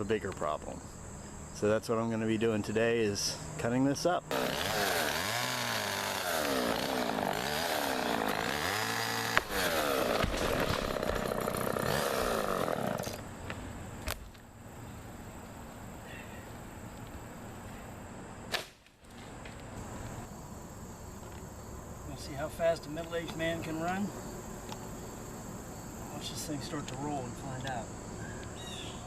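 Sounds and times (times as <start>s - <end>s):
chainsaw cutting wood: 4.3s - 13.2s.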